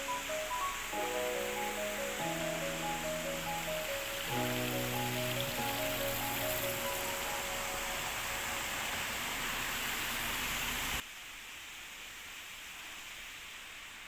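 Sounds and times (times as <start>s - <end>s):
mountain stream rushing: 0.0s - 11.0s.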